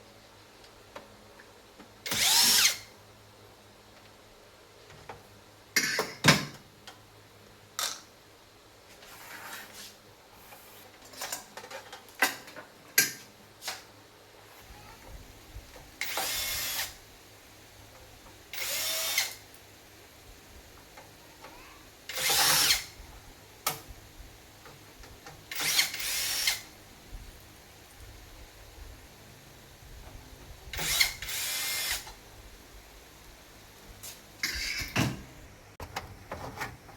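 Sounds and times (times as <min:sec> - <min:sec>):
power drill running: 0:02.1 - 0:02.9, 0:16.0 - 0:17.0, 0:18.5 - 0:19.4, 0:22.1 - 0:22.9, 0:25.5 - 0:26.7, 0:30.7 - 0:32.1
parts being handled: 0:34.0 - 0:36.9.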